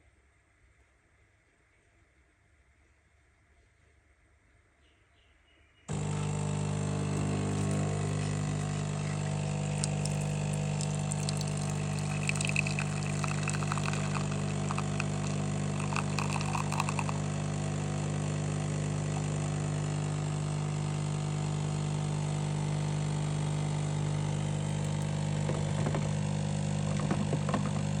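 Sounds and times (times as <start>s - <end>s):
coffee machine pump buzzing: 5.9s - 28.0s
liquid sounds: 6.0s - 17.4s.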